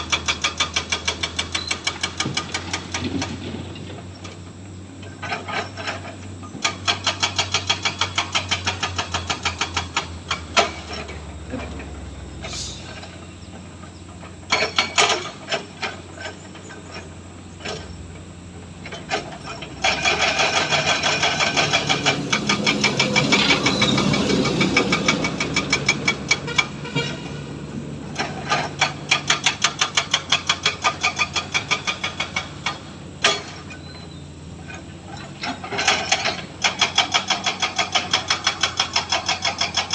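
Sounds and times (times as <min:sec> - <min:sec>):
diesel engine running: 0:00.0 - 0:39.9
rapid metallic knocks: 0:06.6 - 0:11.7, 0:18.9 - 0:27.3, 0:28.1 - 0:33.7.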